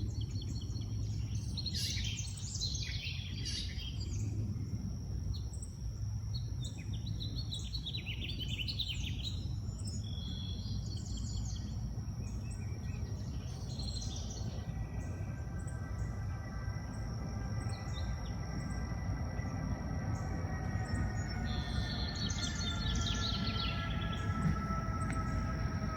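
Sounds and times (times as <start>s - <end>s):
faint high whine: 0.0s - 25.9s
songbirds chirping: 0.0s - 25.9s
steady low rumble: 0.0s - 25.9s.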